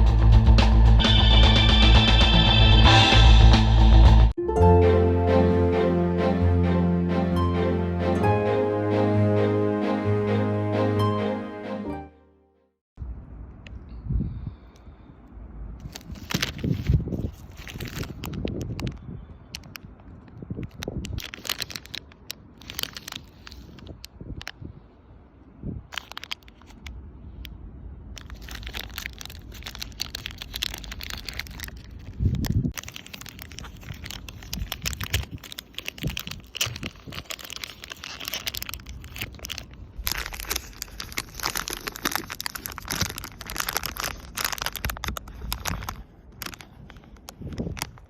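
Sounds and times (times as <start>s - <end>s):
plastic wrapper crinkling: 15.8s - 19.0s, 20.6s - 24.1s, 25.9s - 26.9s, 28.2s - 48.0s.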